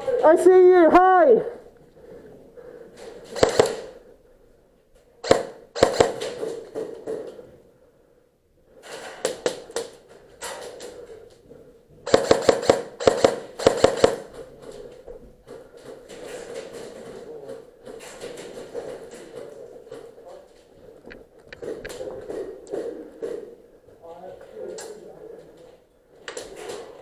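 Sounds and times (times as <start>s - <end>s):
airsoft guns firing: 3.2s - 4.1s, 5.2s - 7.2s, 12.0s - 14.5s.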